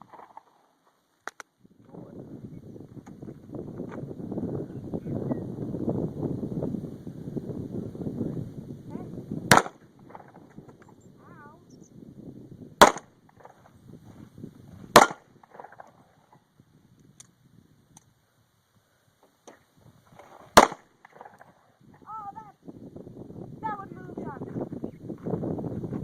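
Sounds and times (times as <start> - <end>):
handgun shots with echo: 9.5 - 10.2, 12.8 - 13.1, 15.0 - 15.9, 20.6 - 20.8.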